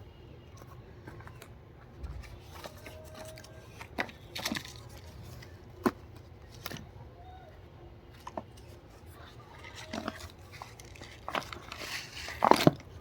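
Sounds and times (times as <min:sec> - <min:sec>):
low room hum: 0:00.0 - 0:13.0
packaging crackling: 0:09.5 - 0:13.0.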